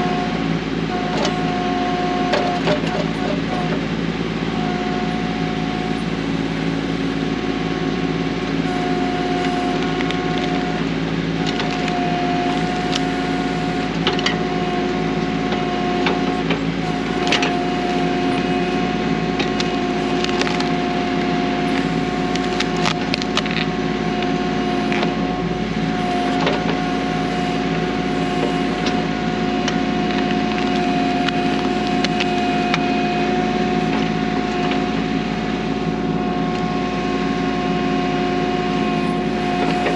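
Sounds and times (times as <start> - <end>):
tractor diesel engine running: 0.0 - 39.9
wood cracking and snapping: 11.4 - 12.0, 19.4 - 23.7, 29.6 - 32.4.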